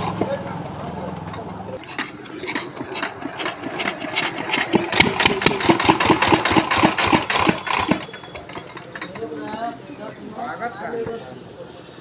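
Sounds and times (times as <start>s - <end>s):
diesel engine chugging: 0.0s - 9.0s.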